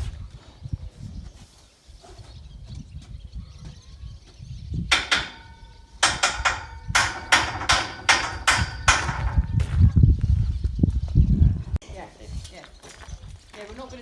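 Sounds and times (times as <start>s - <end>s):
hammer striking steel scaffold: 4.9s - 9.5s.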